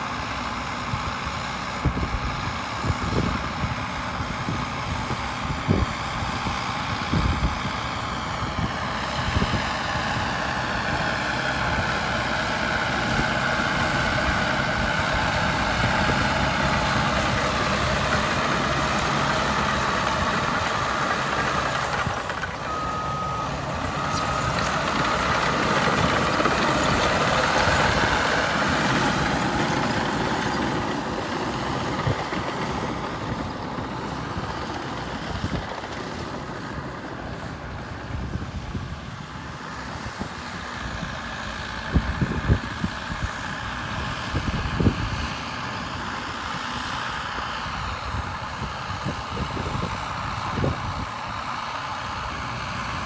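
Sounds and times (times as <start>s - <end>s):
bulldozer diesel engine running: 0.0s - 53.0s
reversing alarm beeping: 16.1s - 29.3s.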